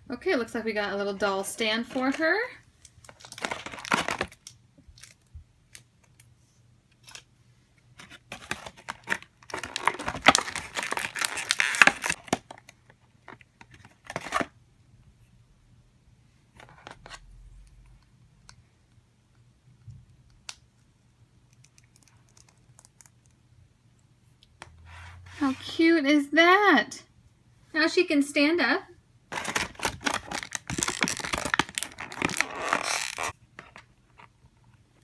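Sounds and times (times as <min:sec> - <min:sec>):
plastic packaging tearing and crinkling: 0:03.1 - 0:05.2, 0:08.3 - 0:12.8, 0:29.3 - 0:33.4.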